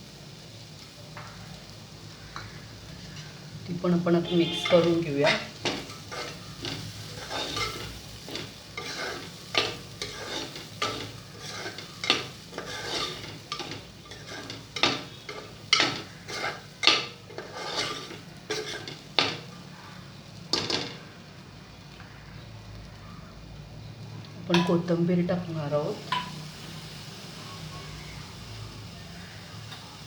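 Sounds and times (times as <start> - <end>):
food sizzling: 0.0 - 30.0
spoon stirring and scraping pan: 2.4 - 19.6, 26.0 - 26.4.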